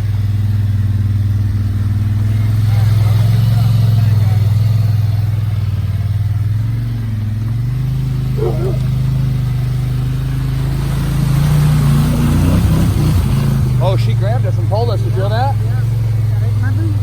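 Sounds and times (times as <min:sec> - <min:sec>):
engine running under load: 0:00.0 - 0:17.0.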